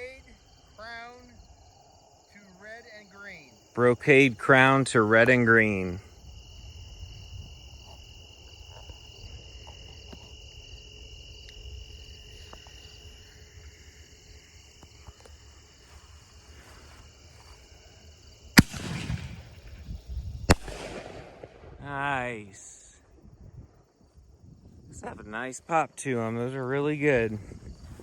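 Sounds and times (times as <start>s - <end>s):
night insects chirring: 0.0s - 28.0s
firework bang: 18.6s - 22.0s.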